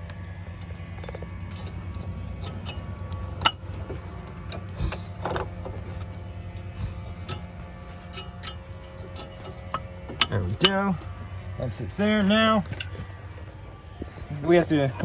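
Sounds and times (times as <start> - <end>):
light metallic clicks and knocks: 0.0 - 11.2
steady low hum: 0.0 - 15.0.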